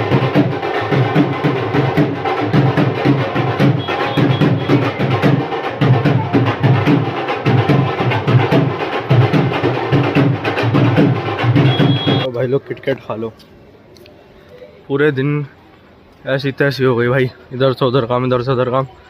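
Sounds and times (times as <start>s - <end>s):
music with fast percussive beat: 0.0s - 12.3s.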